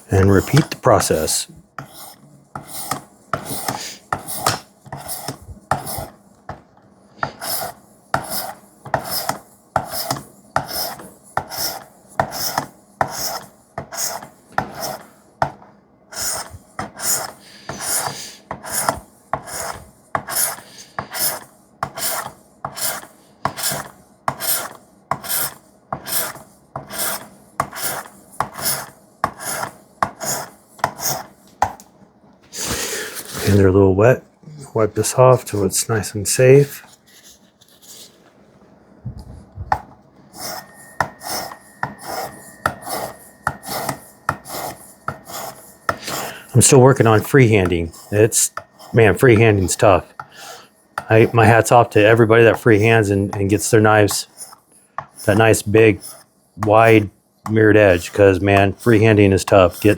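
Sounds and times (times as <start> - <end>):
sharpening stone scraping knife blade: 40.4 - 46.3.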